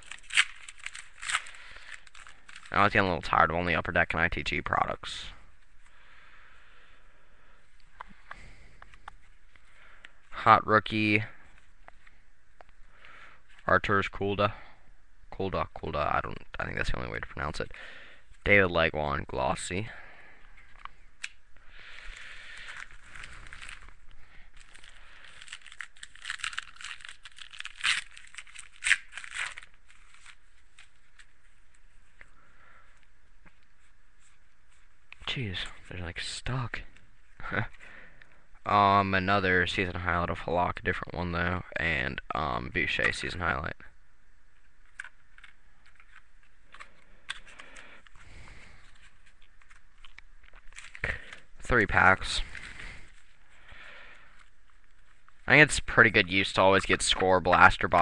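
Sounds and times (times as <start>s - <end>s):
cards sliding rustle: 0.0s - 2.8s, 20.6s - 32.3s, 44.8s - 51.5s
wrapper tearing and crinkling: 0.0s - 3.0s, 22.0s - 31.8s, 44.9s - 51.5s.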